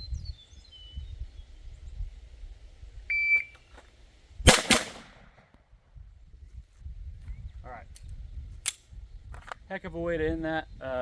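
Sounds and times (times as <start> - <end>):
pistol shots with echo: 4.5 - 5.4.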